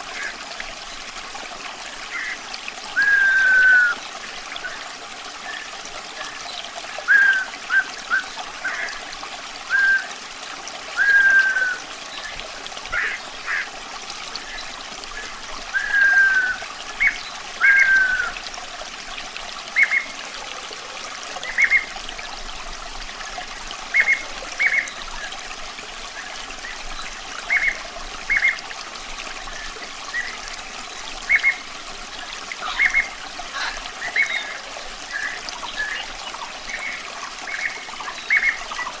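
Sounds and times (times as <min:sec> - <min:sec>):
water trickling: 0:00.0 - 0:39.0
bird whistling calls: 0:03.0 - 0:04.0, 0:07.1 - 0:08.9, 0:09.7 - 0:10.1, 0:11.0 - 0:11.9, 0:15.2 - 0:18.4.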